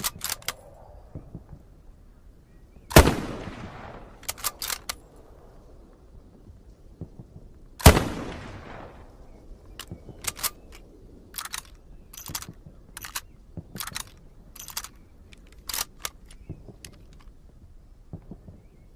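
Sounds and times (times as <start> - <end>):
rifle bolt clicks: 0.0 - 0.7, 4.1 - 5.1, 9.7 - 17.4
rifle shot echoing: 2.9 - 5.5, 7.8 - 12.6.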